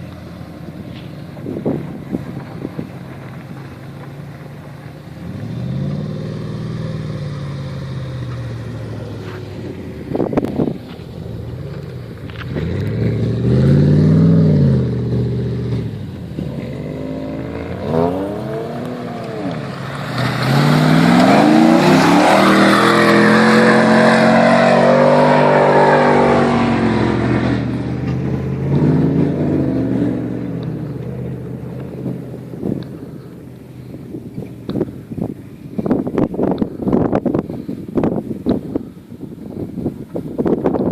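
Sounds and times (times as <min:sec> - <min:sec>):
vehicle engine revving hard: 0:05.2 - 0:10.8, 0:12.4 - 0:34.0
rushing noise: 0:17.8 - 0:38.8.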